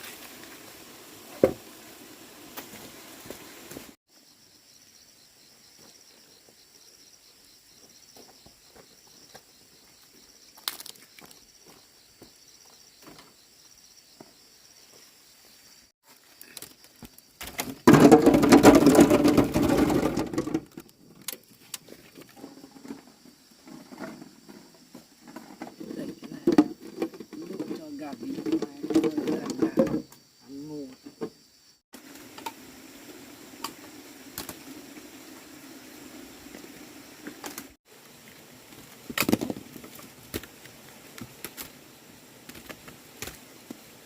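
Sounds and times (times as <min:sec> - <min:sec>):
dry corn plants rustling: 0:00.0 - 0:01.4, 0:16.0 - 0:23.0, 0:36.4 - 0:44.0
insects droning: 0:00.0 - 0:44.0.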